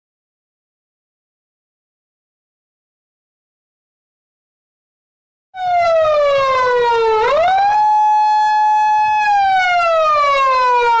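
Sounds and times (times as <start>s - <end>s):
police siren wailing: 5.6s - 11.0s.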